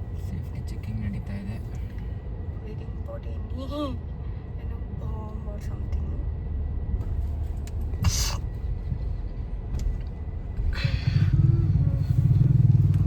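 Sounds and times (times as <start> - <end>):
car engine idling: 5.2 - 13.0.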